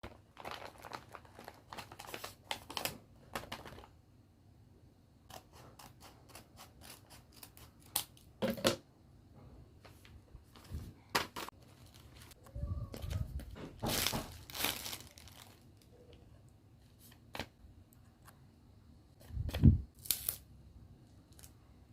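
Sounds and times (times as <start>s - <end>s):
paper and packaging crinkling: 0.0s - 4.0s, 10.4s - 16.1s.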